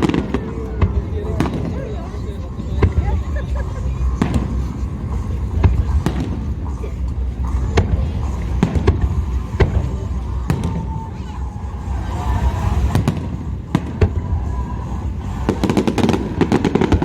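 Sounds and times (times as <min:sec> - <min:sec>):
continuous low rumble: 0:00.0 - 0:17.0
fireworks bursting with sharp bangs: 0:00.0 - 0:17.0.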